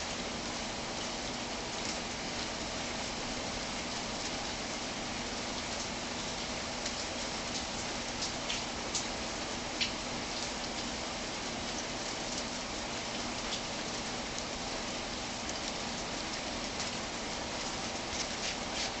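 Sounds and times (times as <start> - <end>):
steady rain: 0.0 - 19.0.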